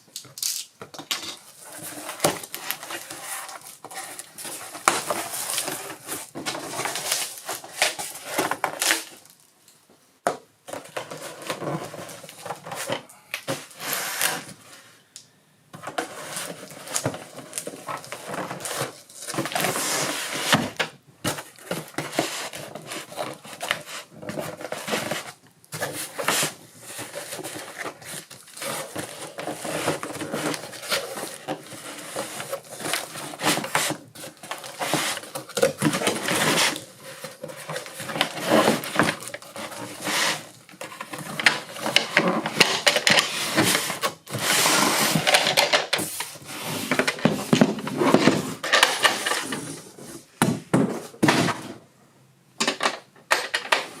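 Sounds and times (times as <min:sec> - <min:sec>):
packaging rustling and crinkling: 0:01.3 - 0:09.5, 0:15.8 - 0:51.8
hard parts clicking and knocking: 0:52.6 - 0:53.9.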